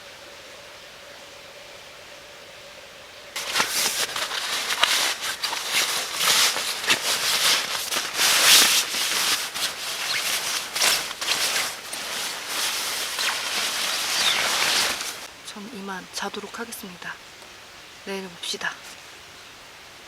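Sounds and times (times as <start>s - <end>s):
close rustling and crackling: 3.4s - 16.8s.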